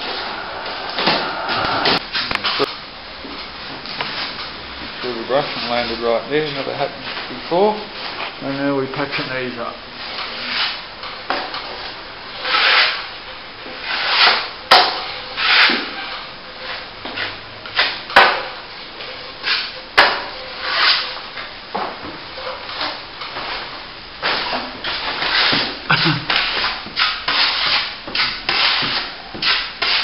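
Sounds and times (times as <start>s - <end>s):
trowel scraping plaster: 12.3s - 13.1s, 13.8s - 18.0s, 24.4s - 30.0s.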